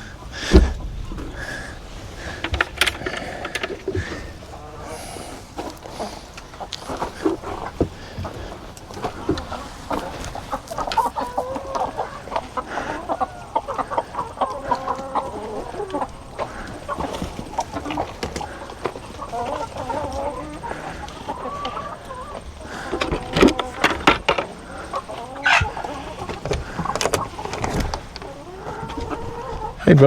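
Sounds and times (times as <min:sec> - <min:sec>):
chickens clucking: 0:00.0 - 0:30.0
light clicks and knocks: 0:00.4 - 0:04.4.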